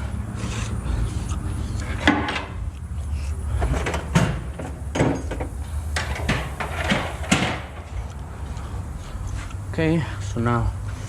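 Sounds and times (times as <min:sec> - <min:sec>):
low steady hum: 0:00.0 - 0:11.0
knocks and clanks of metal tools: 0:02.0 - 0:02.7, 0:03.6 - 0:08.2.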